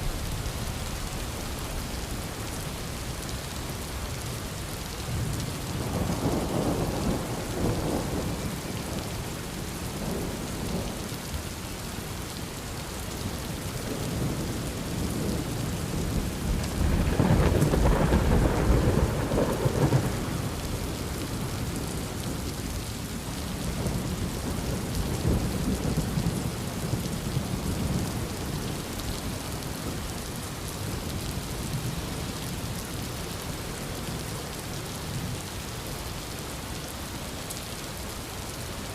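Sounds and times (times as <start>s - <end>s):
heavy rain falling: 0.0s - 38.9s
rolling thunder: 15.0s - 21.0s.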